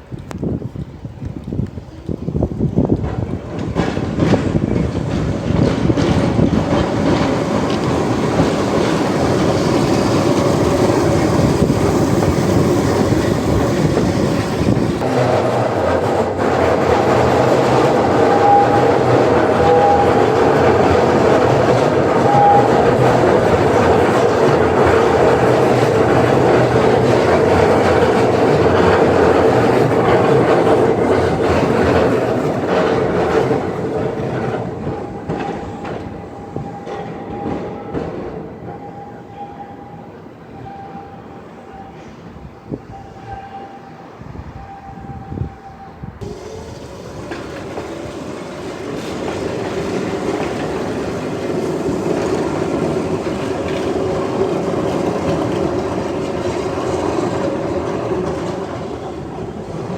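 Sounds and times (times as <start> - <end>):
train rumbling on rails: 0.0 - 59.9
train motor hum: 46.2 - 59.9.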